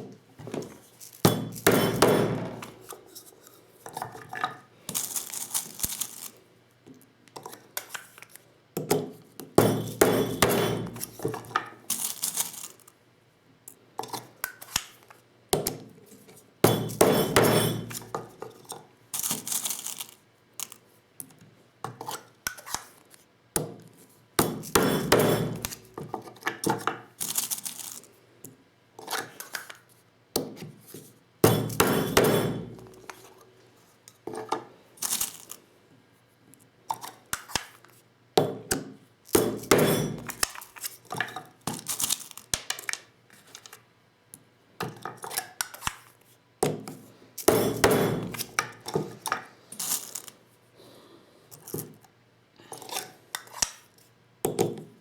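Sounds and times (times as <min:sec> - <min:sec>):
metal tools knocking and clinking: 0:01.2 - 0:02.8, 0:09.6 - 0:11.7, 0:16.7 - 0:18.2, 0:39.4 - 0:40.5, 0:47.5 - 0:49.3.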